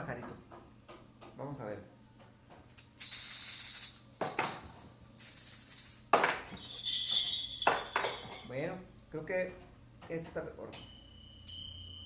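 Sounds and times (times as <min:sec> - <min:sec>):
tambourine shaking: 0:02.7 - 0:08.6
high ringing bell tone: 0:06.6 - 0:08.5, 0:10.8 - 0:12.0.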